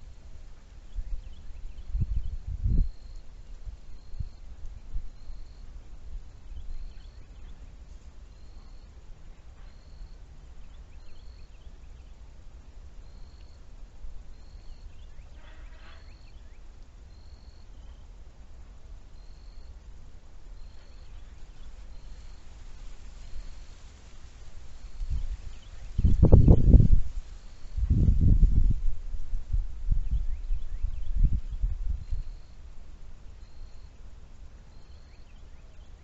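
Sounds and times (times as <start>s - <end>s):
wind rumble on microphone: 0.0s - 7.6s, 20.8s - 33.4s.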